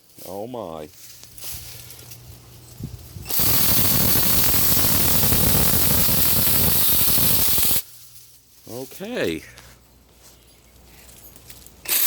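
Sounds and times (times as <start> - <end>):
cordless chainsaw cutting branch: 3.3 - 7.8.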